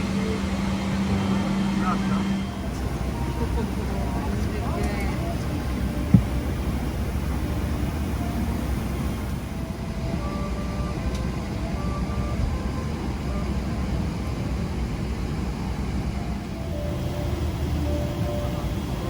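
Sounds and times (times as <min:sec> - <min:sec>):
airliner cabin rumble: 0:00.0 - 0:19.0
music over public address: 0:00.0 - 0:19.0.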